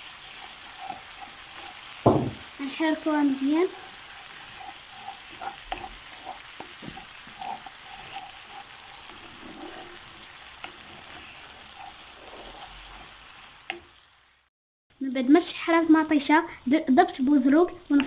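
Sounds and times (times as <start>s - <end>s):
food sizzling in oil: 0.0s - 18.0s.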